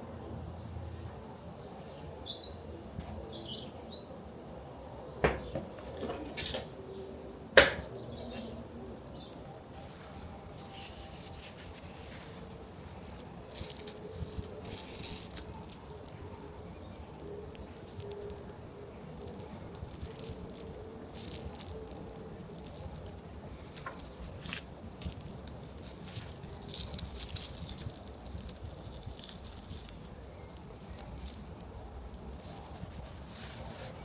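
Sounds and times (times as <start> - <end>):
sharp knocks: 7.6 - 7.9
light rustling: 9.8 - 18.5.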